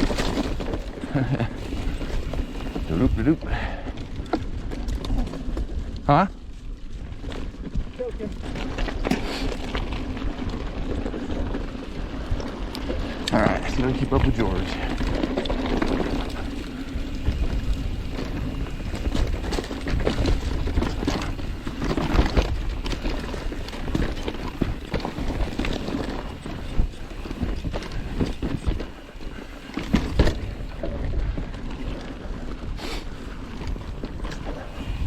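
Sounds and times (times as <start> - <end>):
bike rattling and knocking: 0.0 - 35.0
bike tyres rolling on dirt: 0.0 - 35.0.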